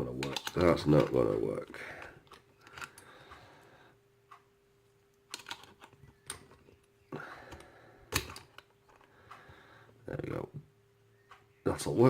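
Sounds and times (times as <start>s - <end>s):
metal lock-picking tools clicking: 0.2s - 1.2s, 5.3s - 6.6s.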